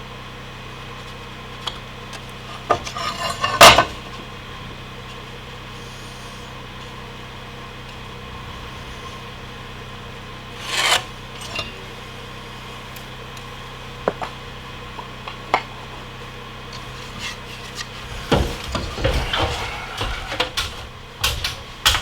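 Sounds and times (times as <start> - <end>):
steady low hum: 0.0 - 22.0
wood scraping on wood: 2.5 - 4.0, 10.5 - 11.9, 16.8 - 22.0.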